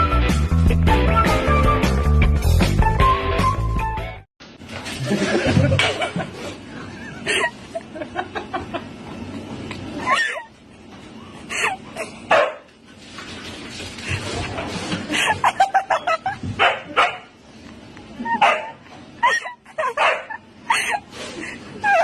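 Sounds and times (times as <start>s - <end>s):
dog barking and yipping: 12.3s - 12.7s, 18.4s - 18.8s, 19.9s - 20.4s.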